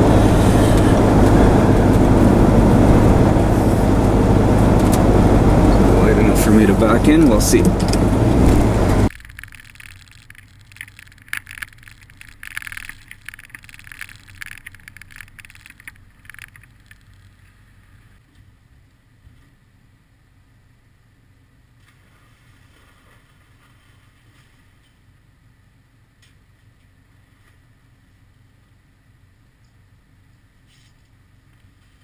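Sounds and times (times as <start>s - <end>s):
vehicle engine running: 0.0s - 9.1s
crackling noise: 0.0s - 18.2s.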